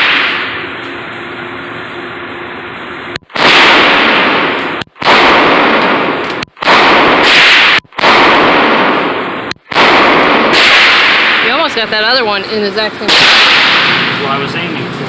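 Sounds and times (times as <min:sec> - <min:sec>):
pistol shots: 0:00.0 - 0:00.6, 0:03.3 - 0:11.9, 0:13.0 - 0:14.2.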